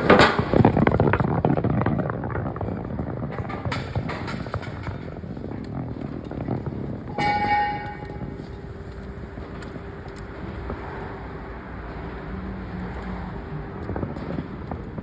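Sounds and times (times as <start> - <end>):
industrial rumble with hum: 0.0 - 15.0
metallic clang ringing: 7.1 - 8.4.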